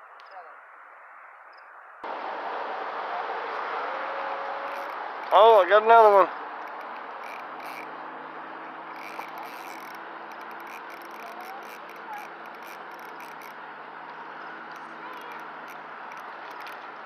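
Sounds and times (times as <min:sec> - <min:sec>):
fishing reel whirring and clicking: 0:04.7 - 0:05.0, 0:06.6 - 0:07.9, 0:08.9 - 0:13.6, 0:14.7 - 0:16.8.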